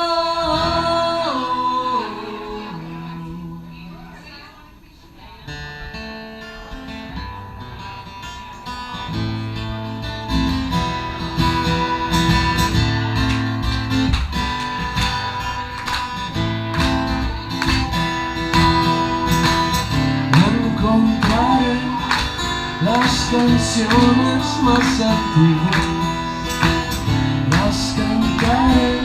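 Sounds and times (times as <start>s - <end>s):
acoustic guitar strumming: 0.0s - 4.5s, 5.4s - 29.0s
band playing: 10.1s - 29.0s.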